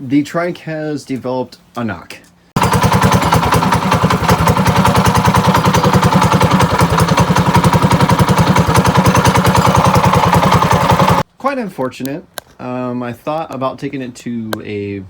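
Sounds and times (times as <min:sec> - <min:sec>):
small engine running with knock: 0:02.6 - 0:11.2.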